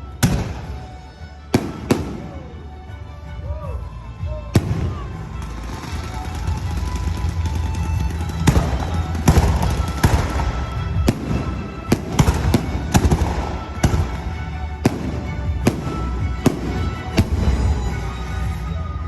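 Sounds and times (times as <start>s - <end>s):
music playing: 0.0s - 19.0s
fireworks bangs: 1.6s - 2.6s, 4.6s - 18.5s.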